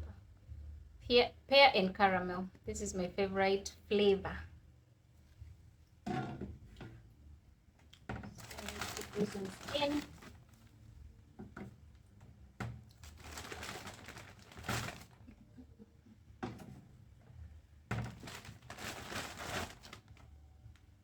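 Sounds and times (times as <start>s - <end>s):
packaging rustling: 8.4s - 10.5s, 13.0s - 15.2s, 18.0s - 20.2s.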